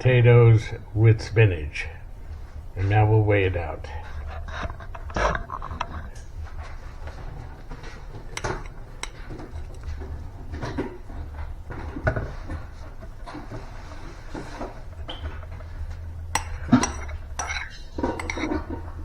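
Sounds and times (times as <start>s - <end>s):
low steady hum: 0.0s - 19.0s
dishes and metal clinking: 4.0s - 19.0s.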